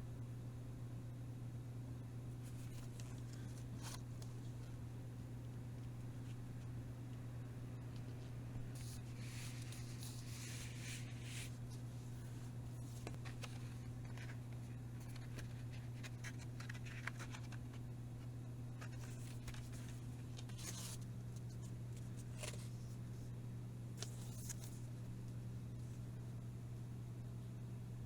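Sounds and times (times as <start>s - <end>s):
low electrical hum: 0.0s - 28.0s
packaging rustling: 12.8s - 17.8s.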